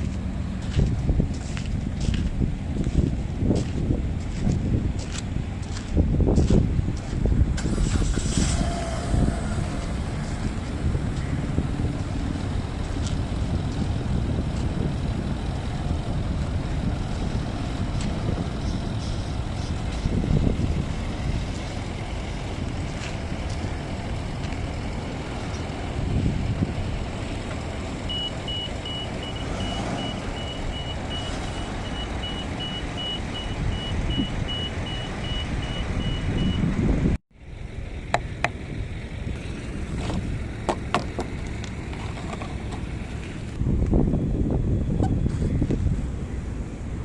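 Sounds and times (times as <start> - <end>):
vehicle rumble: 0.0 - 47.0
reversing alarm beeps: 28.1 - 36.6.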